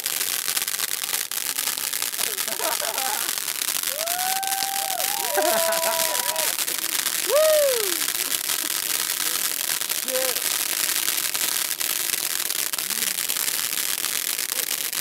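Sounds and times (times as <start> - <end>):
firework crackling and popping: 0.0 - 15.0
person shouting: 3.9 - 6.6, 7.3 - 8.0.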